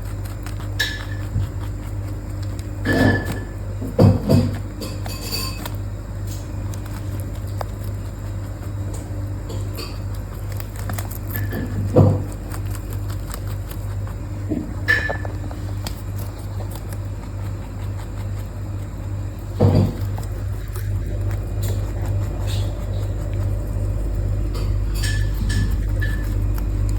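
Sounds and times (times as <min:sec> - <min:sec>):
rabbit chewing loudly: 0:00.0 - 0:26.9.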